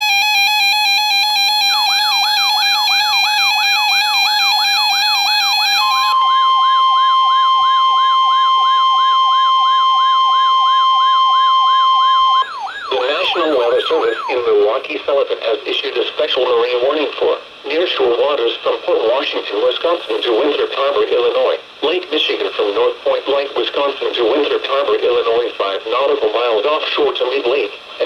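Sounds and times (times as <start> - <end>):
two alternating alarm tones: 0.0 - 14.7
fast repeating siren sweep: 0.1 - 14.9
steady warning alert tone: 6.8 - 14.8
synthesized voice speaking: 12.7 - 14.9.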